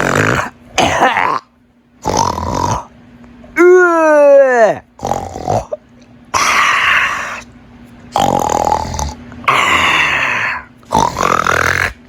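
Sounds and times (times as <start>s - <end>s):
person snoring comically: 0.0s - 0.6s, 2.0s - 2.9s, 5.0s - 5.8s, 8.1s - 12.0s.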